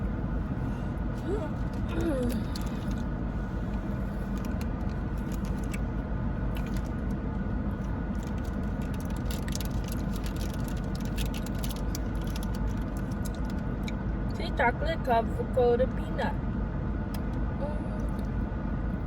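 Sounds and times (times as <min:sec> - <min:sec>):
car cabin rumble: 0:00.0 - 0:16.4
snack packaging rustling: 0:04.2 - 0:05.8, 0:06.5 - 0:07.2, 0:07.8 - 0:13.9.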